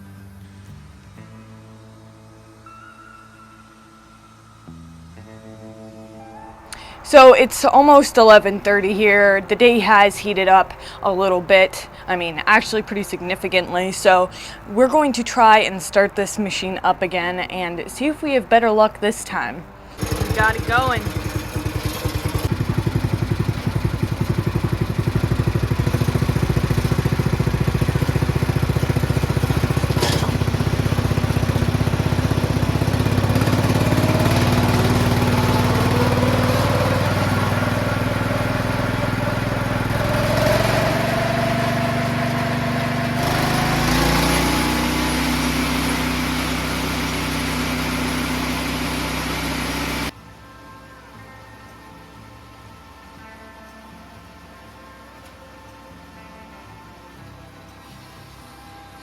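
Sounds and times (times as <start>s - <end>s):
rising machine whine: 0.0s - 7.4s, 19.9s - 50.1s
sawmill machine engine running: 19.9s - 50.1s.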